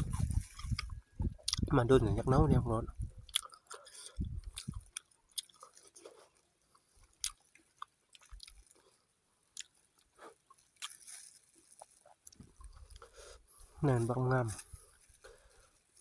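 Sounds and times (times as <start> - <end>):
person chewing fruit: 0.0 - 2.0, 2.9 - 13.7.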